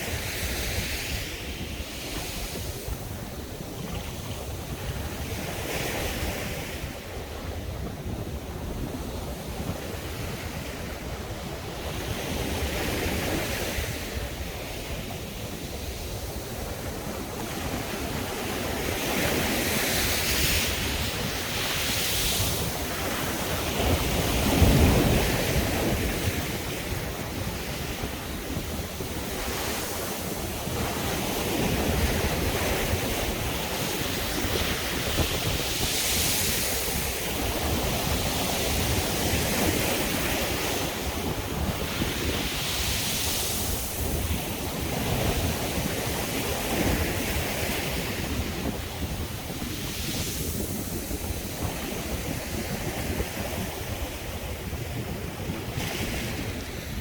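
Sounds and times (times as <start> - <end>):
sea waves breaking: 0.0 - 57.0.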